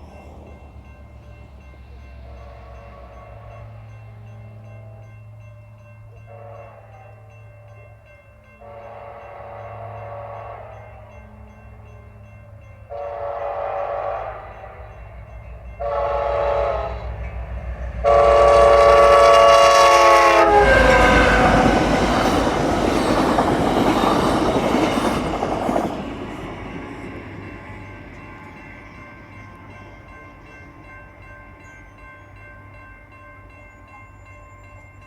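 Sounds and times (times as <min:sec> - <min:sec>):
train passing with loud rumble: 0:00.0 - 0:35.0
wheels on rail: 0:00.0 - 0:35.0
train air horn blasts: 0:02.2 - 0:03.8, 0:06.3 - 0:07.1, 0:08.6 - 0:11.4, 0:12.9 - 0:15.0, 0:15.8 - 0:17.2, 0:18.0 - 0:22.3.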